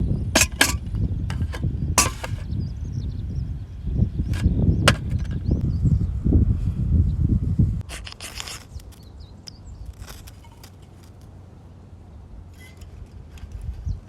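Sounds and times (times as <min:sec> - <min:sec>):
steady low rumble: 0:00.0 - 0:07.9.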